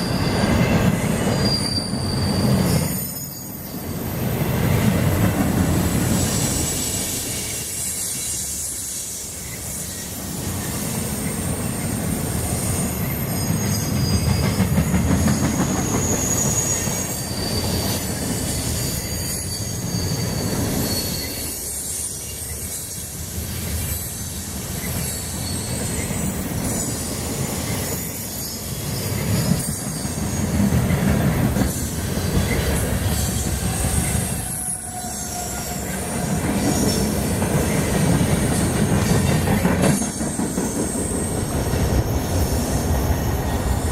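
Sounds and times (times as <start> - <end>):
high-pitched wheel squeal: 0.0 - 3.8, 15.3 - 22.4, 32.4 - 37.0
freight train rumbling past: 0.0 - 43.9.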